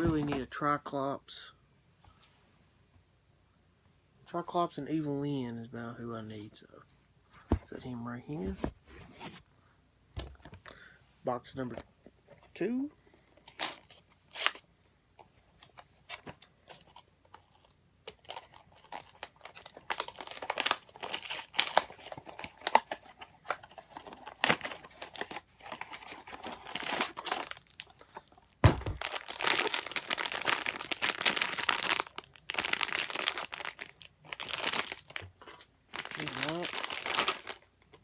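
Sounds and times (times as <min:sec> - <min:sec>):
packaging crinkling and tearing: 0:16.7 - 0:38.0
dull thump: 0:28.6 - 0:29.0.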